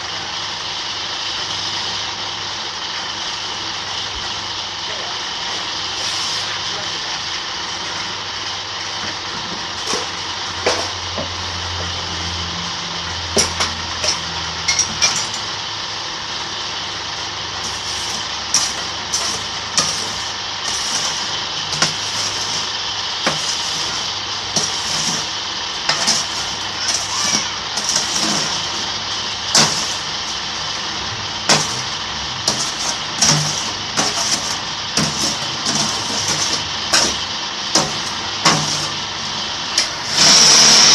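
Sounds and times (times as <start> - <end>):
electric motor hum: 9.6 - 40.9.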